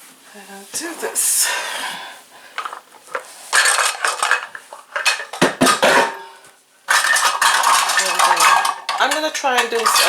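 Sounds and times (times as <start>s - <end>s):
mixing bowls and spoons clattering: 2.6s - 10.0s.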